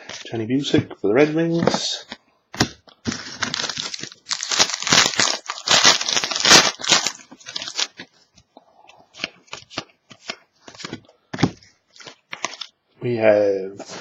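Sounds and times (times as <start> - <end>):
plastic packaging crinkling: 3.0 - 8.2, 11.9 - 12.8
cards clicking and tapping: 9.2 - 12.7.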